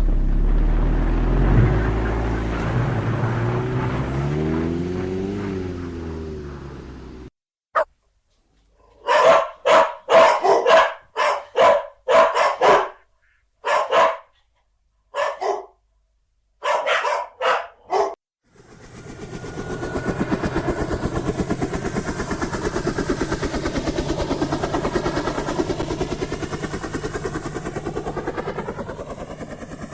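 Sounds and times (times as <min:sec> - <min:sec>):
rapidly pulsing engine: 0:00.0 - 0:07.3, 0:18.5 - 0:29.9
dog barking: 0:08.8 - 0:14.5, 0:15.1 - 0:15.8, 0:16.6 - 0:18.2.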